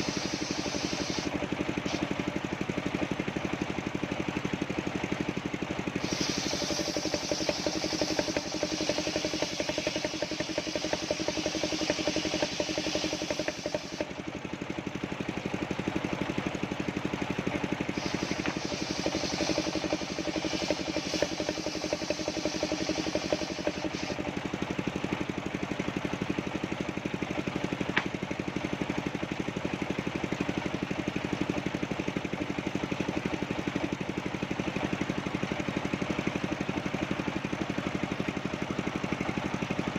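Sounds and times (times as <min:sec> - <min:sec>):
saw blade cutting wood: 0:00.0 - 0:02.1, 0:06.0 - 0:14.2, 0:17.9 - 0:24.2
sawmill engine running: 0:00.0 - 0:39.9.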